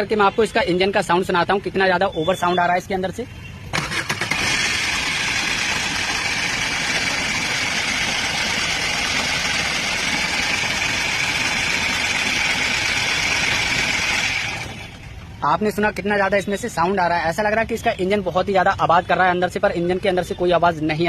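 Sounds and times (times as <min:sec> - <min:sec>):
car engine idling: 0:03.8 - 0:15.3.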